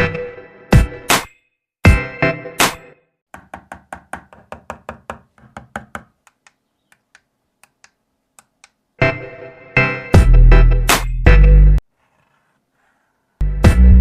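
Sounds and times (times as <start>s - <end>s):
rapid sharp knocks or clicks: 3.4s - 6.6s.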